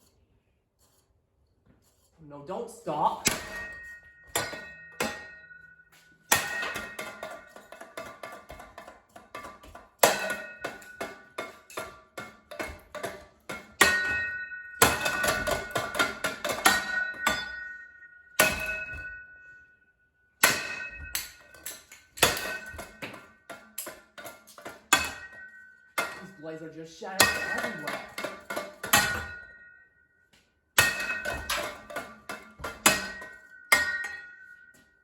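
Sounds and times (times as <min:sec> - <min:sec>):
plastic fan blades shattering: 0:03.2 - 0:05.6, 0:06.3 - 0:17.8, 0:20.4 - 0:26.3, 0:27.1 - 0:29.8, 0:30.8 - 0:34.8.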